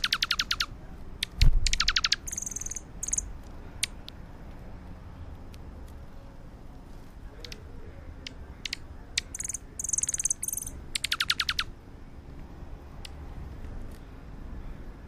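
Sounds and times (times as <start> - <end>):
small birds chirping: 0.0 - 4.0, 7.4 - 11.7.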